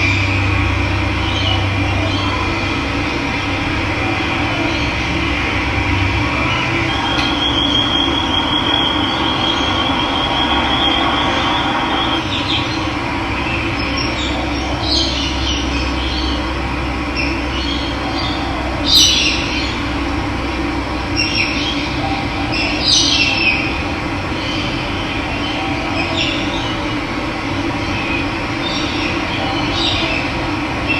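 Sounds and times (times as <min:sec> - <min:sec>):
high rapid trill: 0:02.6 - 0:12.6.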